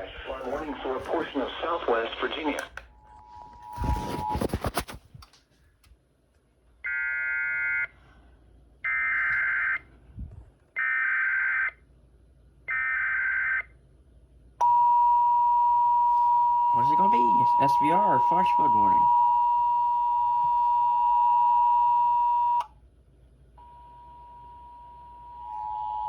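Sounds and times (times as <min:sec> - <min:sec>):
radio static crackle: 0:00.0 - 0:02.9, 0:03.5 - 0:05.1
steady warning alarm tone: 0:14.6 - 0:22.6.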